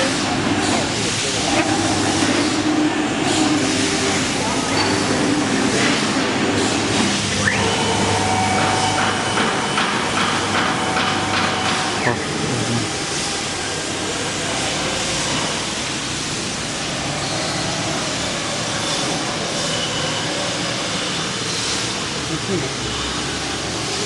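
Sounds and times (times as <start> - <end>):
plasma cutter hissing: 0.0 - 7.4
pulsing whine: 7.2 - 12.7.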